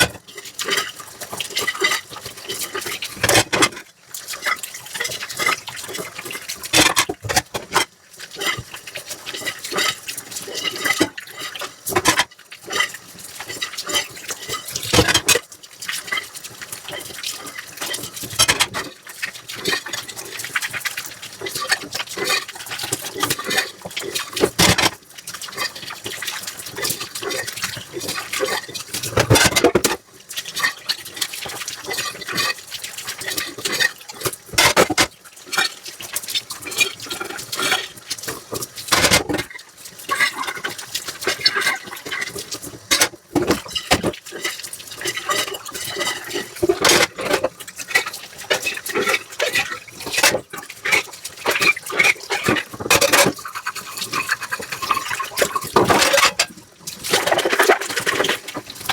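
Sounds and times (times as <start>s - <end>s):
scrubbing dishes: 0.0s - 0.9s, 3.2s - 3.8s, 6.7s - 8.6s, 11.9s - 12.9s, 14.9s - 15.4s, 18.2s - 18.8s, 24.4s - 25.0s, 28.4s - 30.0s, 33.7s - 35.1s, 38.9s - 40.5s, 41.4s - 44.5s, 45.3s - 47.6s, 48.5s - 58.9s
water running and splashing: 0.0s - 58.9s
dishes clinking: 18.4s - 18.8s.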